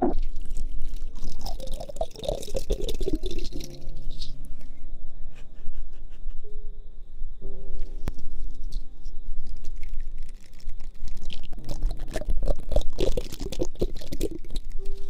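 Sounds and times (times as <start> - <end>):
faint music: 3.2 - 12.2.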